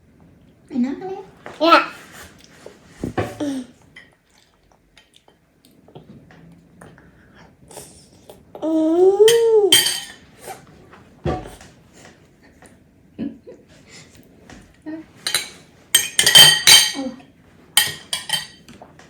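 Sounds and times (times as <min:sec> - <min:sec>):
cutlery clinking against a dish: 0:09.3 - 0:10.2, 0:15.2 - 0:17.1, 0:17.8 - 0:18.8.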